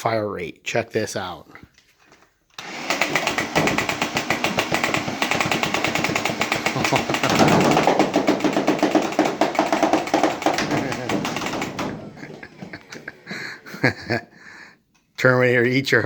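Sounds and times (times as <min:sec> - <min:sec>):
blaster motor whir: 0:02.6 - 0:07.4
rapid foam ball shots: 0:02.6 - 0:13.1.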